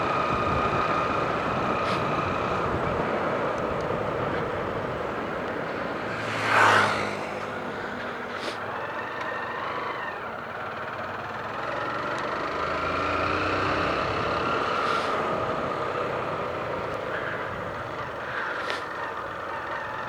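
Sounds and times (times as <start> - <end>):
wind rushing over microphone: 0.0 - 9.0, 13.6 - 18.9
motorcycle engine revving: 0.0 - 20.0.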